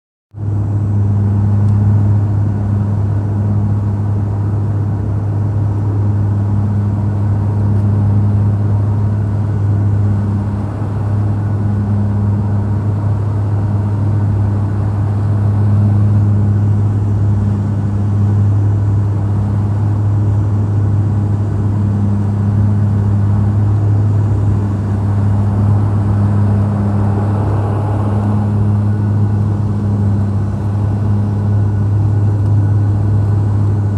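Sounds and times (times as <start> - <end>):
airliner engine drone: 0.4 - 33.9
wavering higher hum: 0.5 - 33.9
rushing of air: 24.0 - 30.6.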